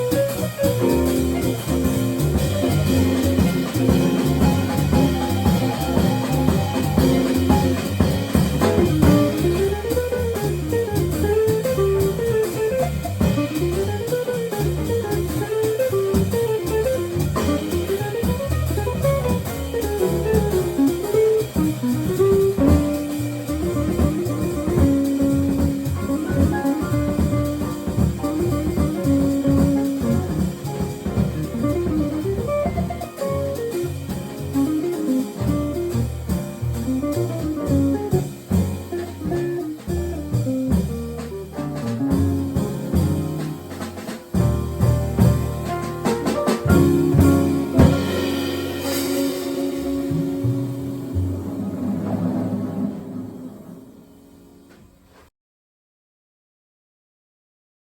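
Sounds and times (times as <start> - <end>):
jazz quartet playing: 0.0 - 55.0.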